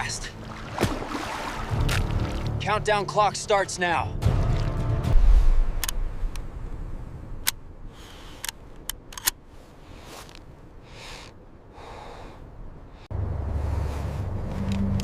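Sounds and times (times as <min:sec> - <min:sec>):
blizzard wind rumble: 0:04.4 - 0:15.0
sharp cracks: 0:05.4 - 0:06.5.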